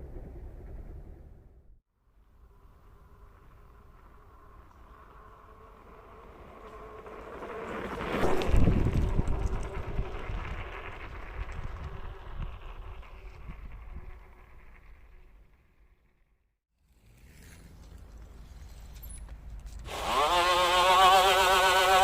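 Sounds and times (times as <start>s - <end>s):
wind and tyre noise: 0.0s - 22.0s
electric bike motor whine: 2.4s - 15.7s, 19.9s - 22.0s.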